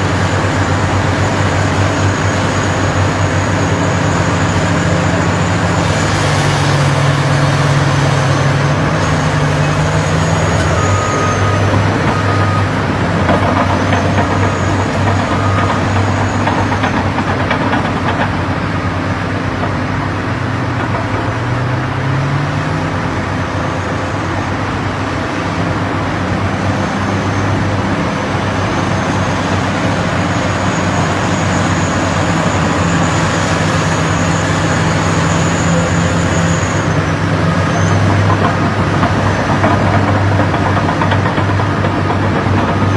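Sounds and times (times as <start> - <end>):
heavy diesel engine revving: 0.0 - 42.9.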